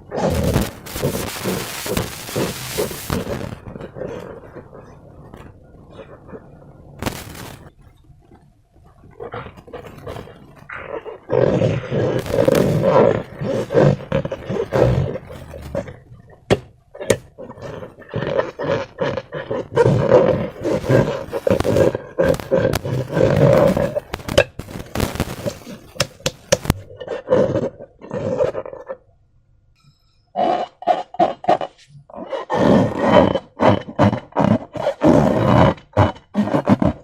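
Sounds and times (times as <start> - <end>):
rubbery slime squelching: 0.0 - 29.0
sharp clicks: 20.7 - 26.8.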